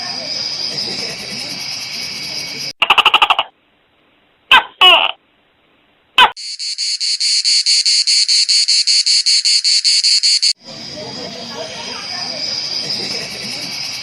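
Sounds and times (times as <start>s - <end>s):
cricket chirping: 0.0s - 2.7s, 6.4s - 14.0s.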